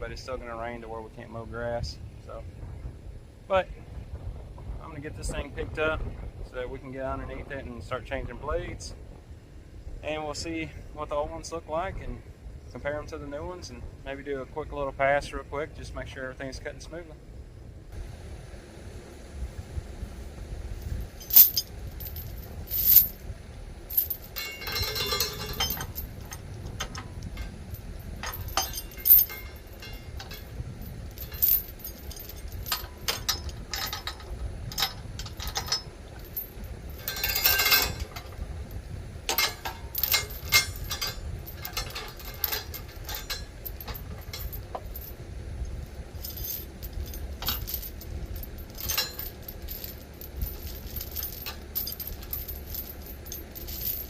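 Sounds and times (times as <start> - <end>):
metal chain clinking and rattling: 20.8 - 23.2, 23.9 - 45.2, 45.8 - 54.0.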